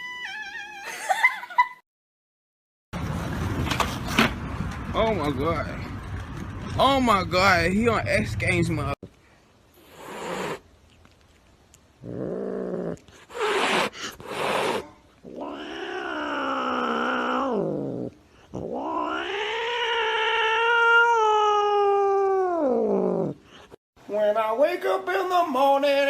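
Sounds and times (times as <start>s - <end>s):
cat yowling: 0.0s - 1.0s, 13.3s - 18.0s, 18.6s - 23.3s
cat hissing: 9.8s - 10.7s, 12.1s - 21.2s.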